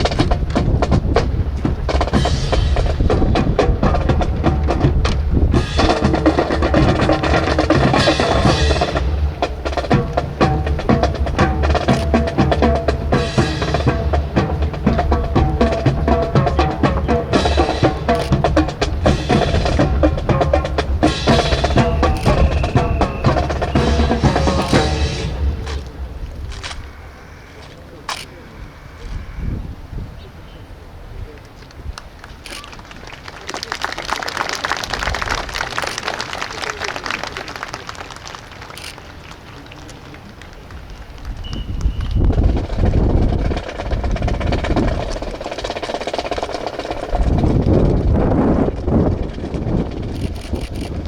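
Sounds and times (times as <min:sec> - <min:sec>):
marching drum cadence: 0:00.0 - 0:27.2, 0:41.1 - 0:51.0
wood-block-like clicks: 0:14.9 - 0:25.0.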